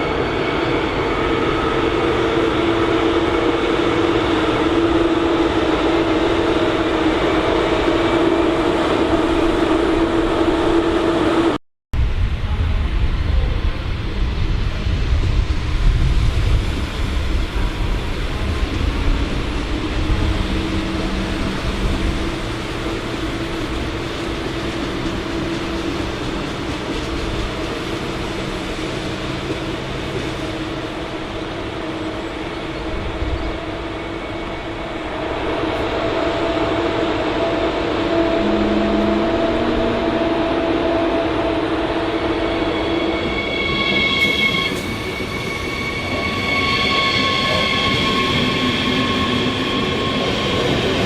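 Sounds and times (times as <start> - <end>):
train wheels rumbling on rails: 0.0 - 51.0
steady humming tones: 36.2 - 42.4.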